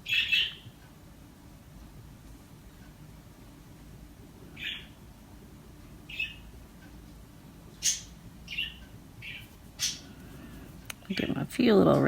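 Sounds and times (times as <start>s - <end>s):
small bird chirping: 0.0s - 0.8s, 4.6s - 5.0s, 6.1s - 6.5s, 7.8s - 10.1s.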